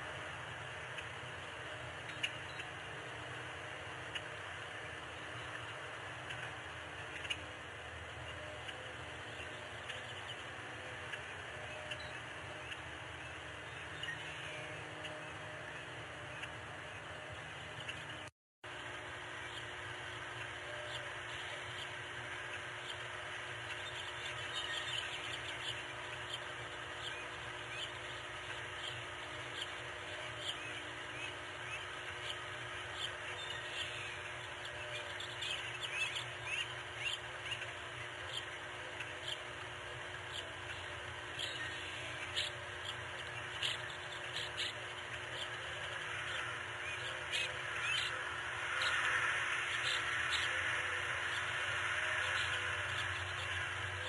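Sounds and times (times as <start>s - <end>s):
birds chirping: 0.0s - 54.0s
steady background hiss: 0.0s - 54.0s.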